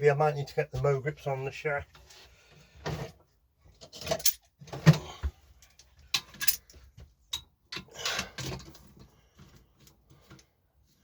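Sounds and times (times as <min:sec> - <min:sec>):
metal tools clinking on metal: 0:04.0 - 0:04.5, 0:06.2 - 0:06.7.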